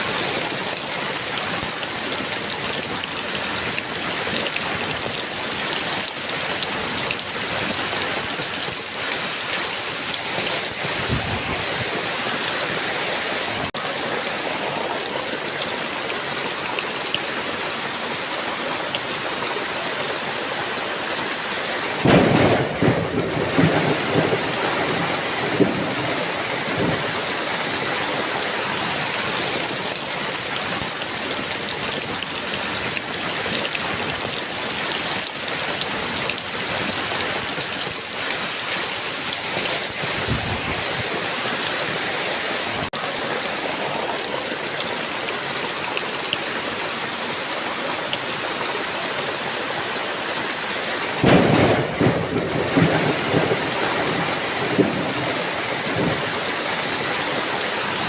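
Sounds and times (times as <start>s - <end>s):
heavy rain: 0.0s - 58.0s
thunder rumbling: 22.0s - 27.4s, 51.2s - 56.5s.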